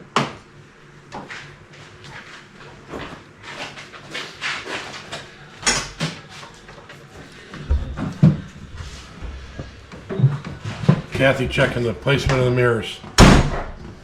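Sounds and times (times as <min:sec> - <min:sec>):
scuffs and rustles of climbing in: 0:06.2 - 0:12.8
loud thump: 0:13.2 - 0:13.8.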